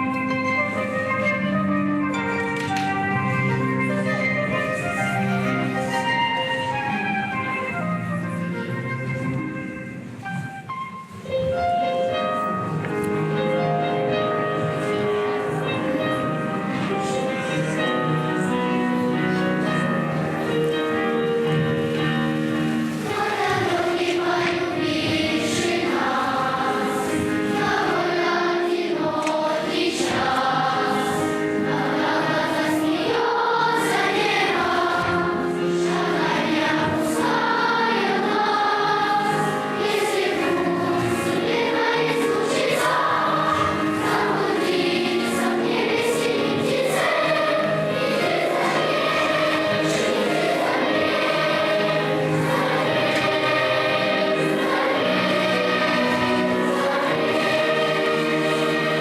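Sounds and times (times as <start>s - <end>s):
instrumental accompaniment: 0.0s - 59.0s
choir singing: 22.3s - 59.0s.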